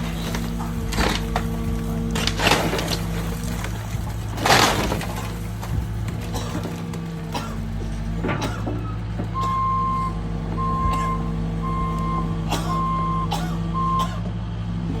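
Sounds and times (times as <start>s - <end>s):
diesel engine running: 0.0s - 15.0s
backup alarm beeping: 9.4s - 14.1s.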